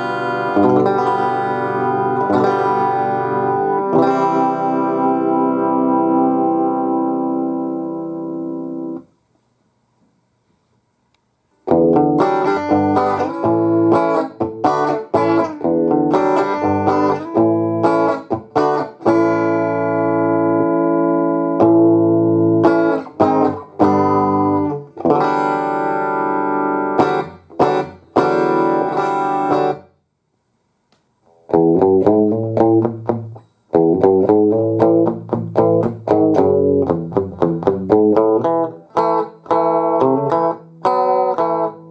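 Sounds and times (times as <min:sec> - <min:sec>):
amplified guitar playing: 0:00.0 - 0:09.1, 0:11.6 - 0:29.8, 0:31.4 - 0:41.9.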